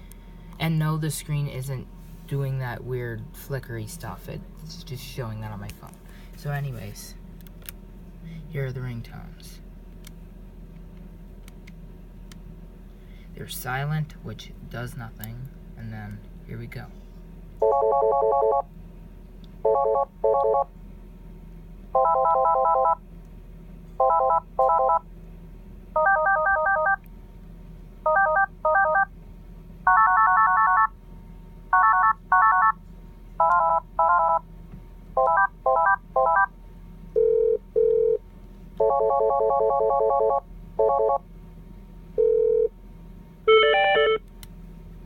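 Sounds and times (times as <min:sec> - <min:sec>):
electronic phone ring bursts: 0:29.9 - 0:30.9, 0:43.5 - 0:44.2.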